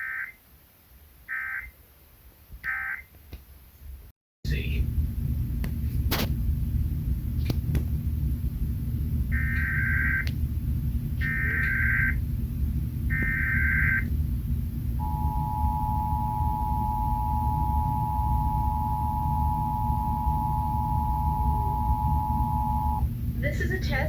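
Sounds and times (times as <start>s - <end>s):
low hum: 4.5s - 24.0s
screechy digital data bursts: 9.4s - 10.2s, 11.2s - 12.2s, 13.1s - 14.1s, 15.0s - 23.0s
two-tone attention signal: 15.0s - 23.0s.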